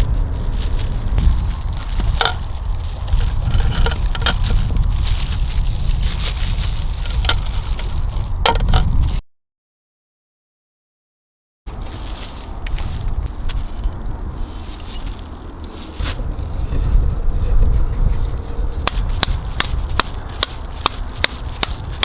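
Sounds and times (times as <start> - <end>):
wood cracking and snapping: 0.0 - 9.0, 18.8 - 22.0
low rumble: 0.0 - 9.2, 12.6 - 20.4.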